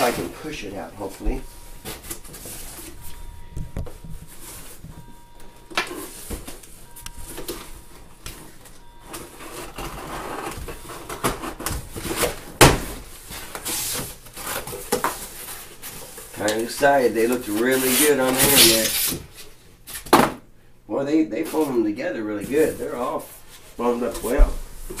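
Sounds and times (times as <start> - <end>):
heavy thump: 2.9 - 5.1.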